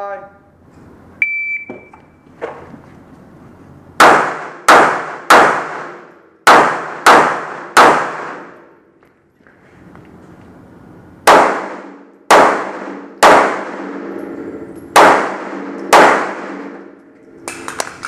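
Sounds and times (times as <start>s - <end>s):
pistol shots ringing: 4.0s - 8.7s, 11.2s - 14.1s, 14.9s - 17.0s.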